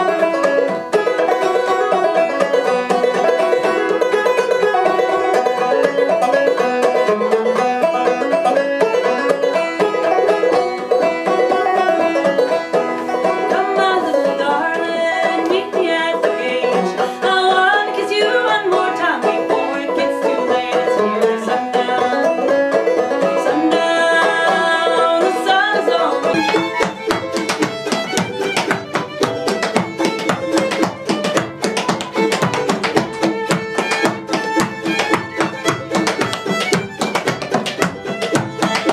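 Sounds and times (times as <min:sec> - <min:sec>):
acoustic string band playing: 0:00.0 - 0:38.9
banjo picking: 0:00.0 - 0:38.9
sharp rhythmic hits: 0:26.3 - 0:38.9.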